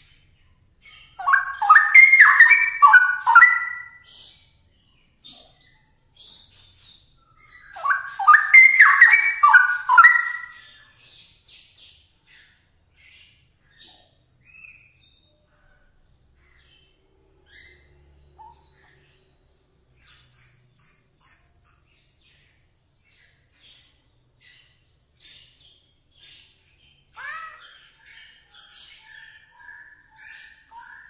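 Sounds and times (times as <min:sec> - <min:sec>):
bird singing warbled notes: 0:01.0 - 0:04.0, 0:07.6 - 0:10.7
short high bird chirps: 0:01.2 - 0:04.0, 0:07.7 - 0:10.6.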